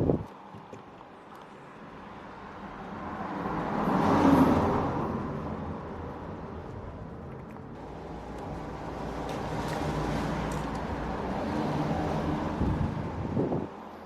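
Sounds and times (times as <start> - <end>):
vehicle passing by: 2.6 - 6.5, 7.8 - 14.0.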